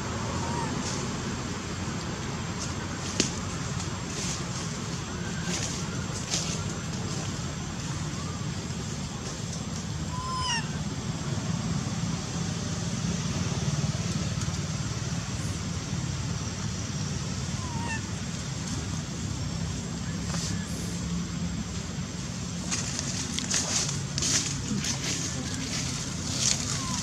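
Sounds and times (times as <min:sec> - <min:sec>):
low outdoor rumble: 0:00.0 - 0:27.0
high gliding chirping calls: 0:10.1 - 0:10.8, 0:17.4 - 0:18.3, 0:24.8 - 0:27.0.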